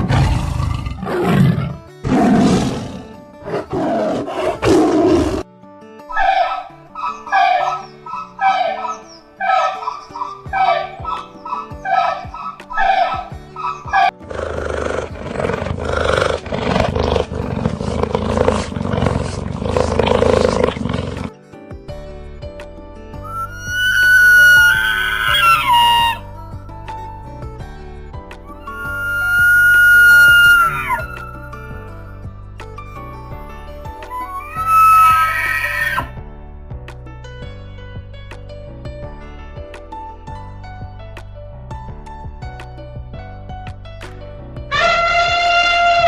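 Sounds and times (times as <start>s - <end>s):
big cat roaring and growling: 0.0s - 5.5s, 14.2s - 21.3s
background music: 0.0s - 46.0s.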